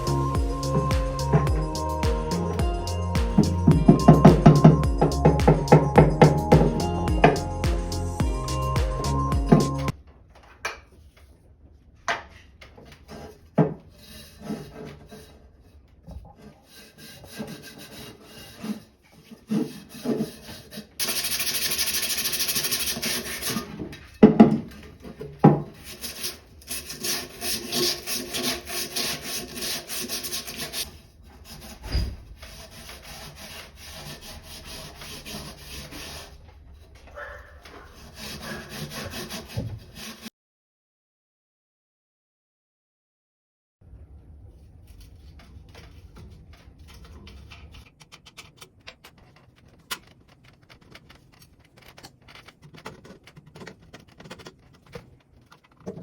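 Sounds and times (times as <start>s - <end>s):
rubbing and scraping strokes: 0.0s - 8.2s, 13.0s - 37.0s, 37.6s - 40.3s
rapid scrubbing strokes: 16.6s - 23.7s, 25.8s - 31.8s, 32.4s - 36.4s, 37.8s - 40.3s.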